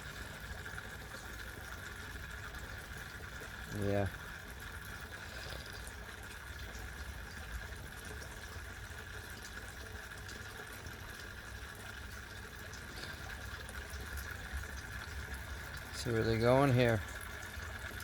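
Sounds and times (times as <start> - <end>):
water trickling into a pond: 0.0 - 18.0.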